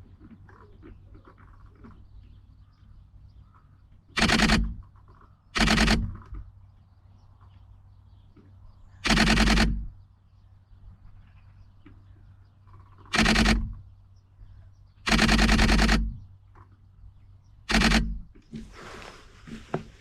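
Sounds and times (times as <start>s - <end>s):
faint birdsong: 0.0s - 20.0s
camera shutter clicking rapidly: 4.2s - 4.8s, 5.6s - 6.2s, 9.0s - 9.9s, 13.1s - 13.8s, 15.1s - 16.2s, 17.7s - 18.3s.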